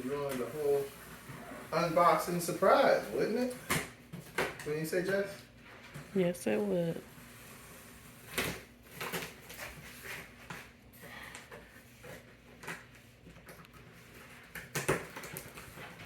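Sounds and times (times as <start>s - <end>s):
cardboard rustling and scraping: 7.1s - 10.8s.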